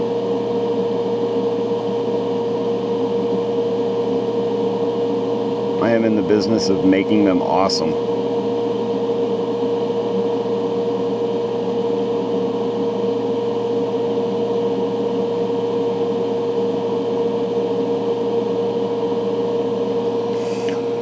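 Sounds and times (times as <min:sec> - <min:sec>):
ventilation fan humming: 0:05.0 - 0:08.5, 0:19.9 - 0:21.0.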